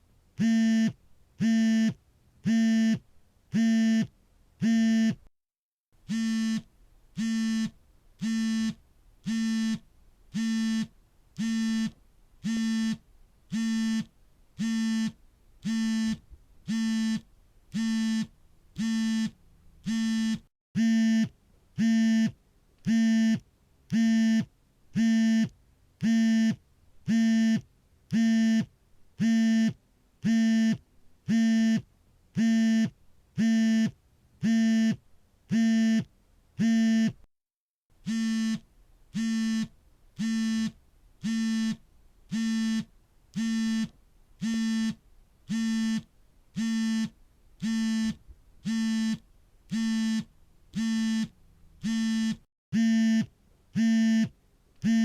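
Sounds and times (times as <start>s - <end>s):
phone vibration buzzing: 6.1s - 9.8s, 10.4s - 22.3s, 38.0s - 55.0s.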